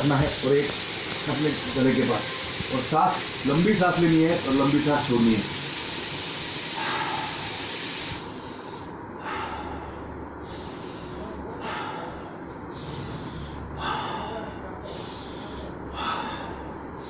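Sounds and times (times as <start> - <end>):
person breathing deeply: 6.5 - 17.0.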